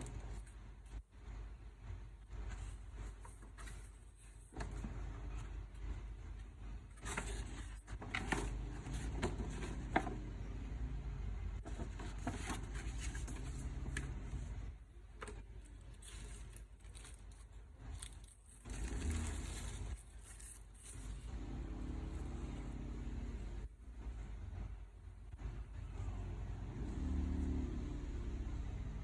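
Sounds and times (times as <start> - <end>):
packaging rustling and scraping: 2.4 - 5.8, 6.8 - 10.2, 11.6 - 21.3.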